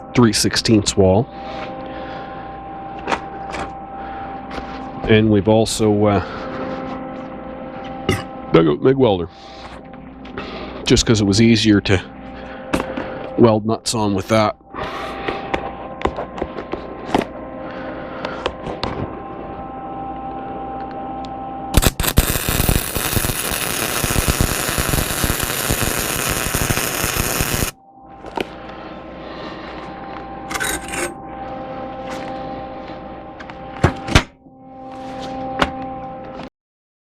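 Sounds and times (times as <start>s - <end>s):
steady hum: 0.0s - 36.5s
welder arc crackling: 21.8s - 27.8s.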